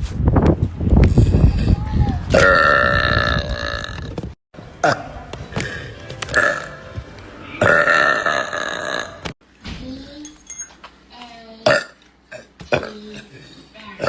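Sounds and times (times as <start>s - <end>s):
woman burping loudly: 2.4s - 4.1s, 7.6s - 9.2s.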